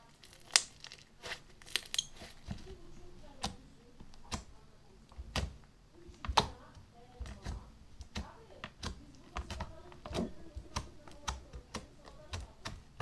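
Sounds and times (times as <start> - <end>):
slime popping and clicking: 0.2 - 2.3.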